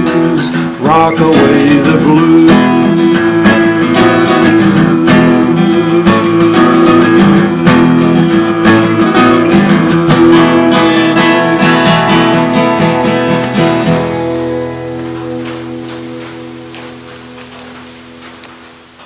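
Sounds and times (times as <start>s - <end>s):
acoustic guitar strumming: 0.0s - 19.0s.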